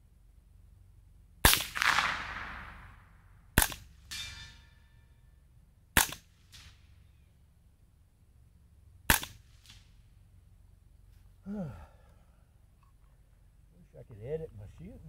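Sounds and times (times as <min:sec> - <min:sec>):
rifle shots: 0:01.4 - 0:04.5, 0:06.0 - 0:06.9, 0:09.1 - 0:09.9
gunshot echo: 0:01.4 - 0:04.6, 0:06.0 - 0:06.8, 0:09.1 - 0:09.8.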